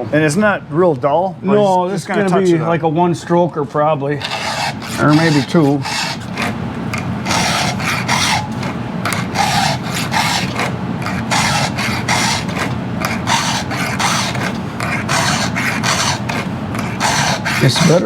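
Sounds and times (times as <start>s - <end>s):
steady low hum: 0.0s - 18.0s
file rasping on chain cutters: 4.2s - 18.0s.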